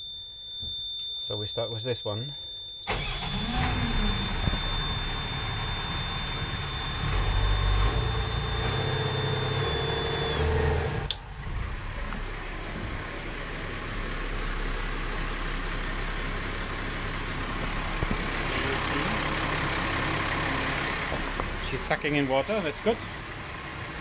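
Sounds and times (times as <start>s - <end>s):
high-pitched warning tone: 0.0s - 11.0s, 18.3s - 19.6s
diesel engine idling: 2.9s - 24.0s.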